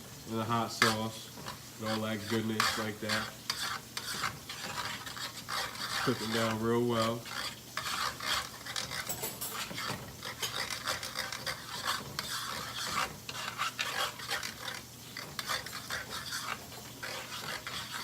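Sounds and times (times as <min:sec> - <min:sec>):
food sizzling lightly: 0:00.0 - 0:18.0
spoon scraping a skillet: 0:00.2 - 0:18.0.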